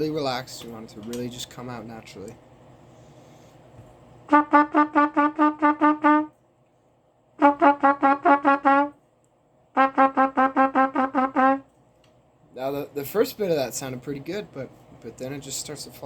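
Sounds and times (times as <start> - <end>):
trumpet playing short tongued notes: 4.3 - 6.4, 7.4 - 9.0, 9.8 - 11.7.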